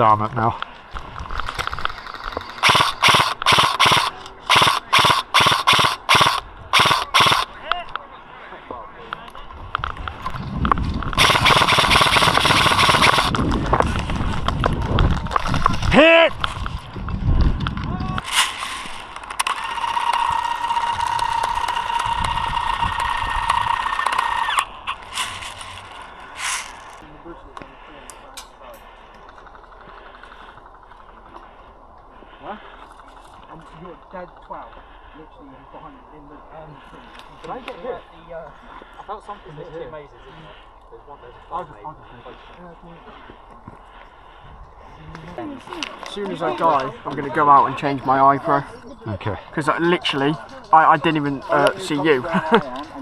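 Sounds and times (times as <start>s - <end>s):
airsoft gun firing bursts: 2.0s - 7.5s, 11.2s - 13.3s.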